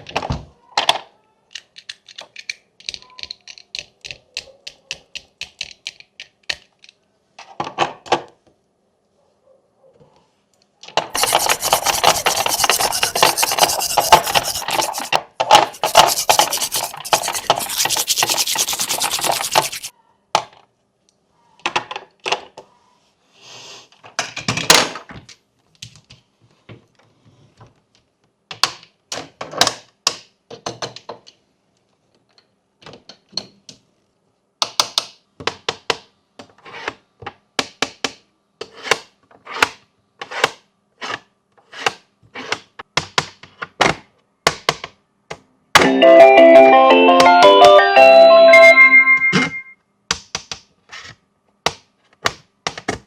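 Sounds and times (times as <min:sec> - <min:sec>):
rasping rub: 0:11.2 - 0:19.9.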